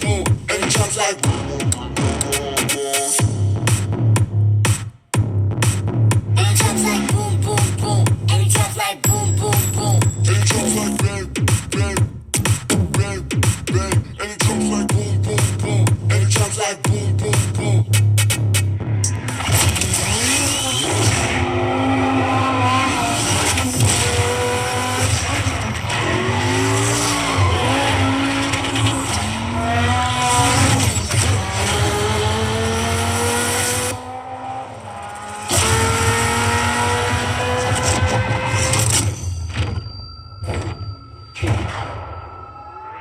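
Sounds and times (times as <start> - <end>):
car engine revving hard: 18.4 - 39.0
tyre squeal: 19.9 - 21.6, 22.8 - 31.4.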